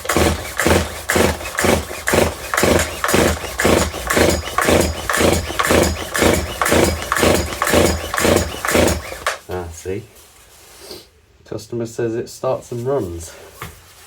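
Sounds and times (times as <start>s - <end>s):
chainsaw starter cord yanks: 0.0s - 9.4s
engine turning over: 0.0s - 9.4s.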